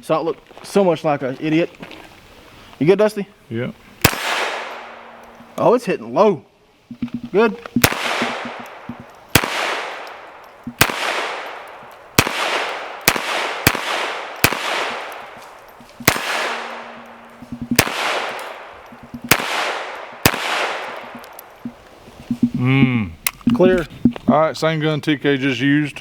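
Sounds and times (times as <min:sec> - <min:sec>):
pistol shots with echo: 0:04.0 - 0:05.6, 0:07.8 - 0:21.6.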